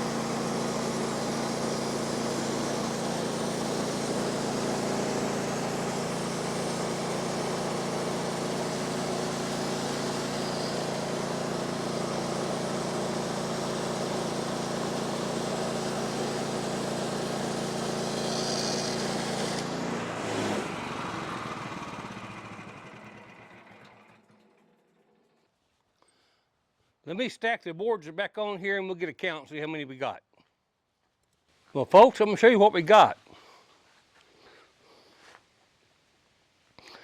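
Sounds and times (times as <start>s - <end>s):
small gasoline engine running: 0.0s - 25.4s.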